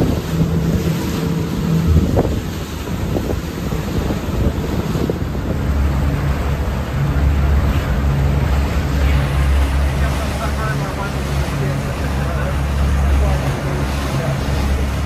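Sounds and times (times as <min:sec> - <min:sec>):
wind noise on microphone: 0:00.0 - 0:09.8
boat engine hum: 0:00.0 - 0:15.0
water rushing along hull: 0:00.0 - 0:15.0.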